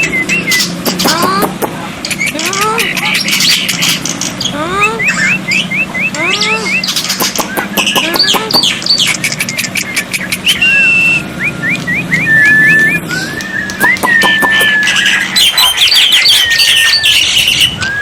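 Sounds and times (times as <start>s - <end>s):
bird whistles: 0.0s - 1.3s, 4.8s - 18.0s
bird harsh chatter: 0.0s - 18.0s
bird clicks: 0.3s - 4.4s, 6.9s - 10.6s, 13.3s - 14.9s.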